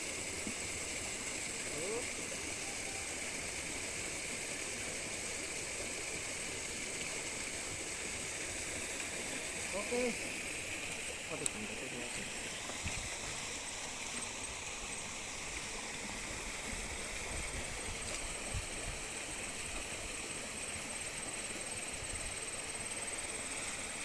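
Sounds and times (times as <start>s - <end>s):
waterfall and stream rushing: 0.0s - 20.6s
thin high whine: 1.0s - 4.0s.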